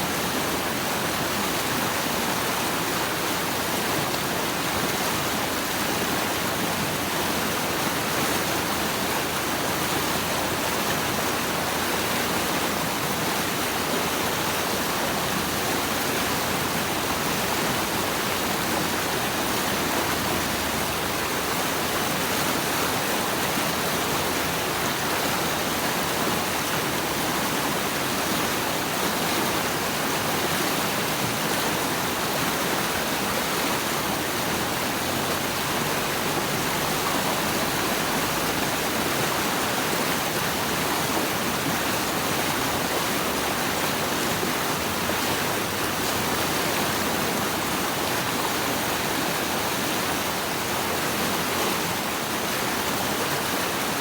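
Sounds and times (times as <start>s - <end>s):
rushing water: 0.0s - 54.0s.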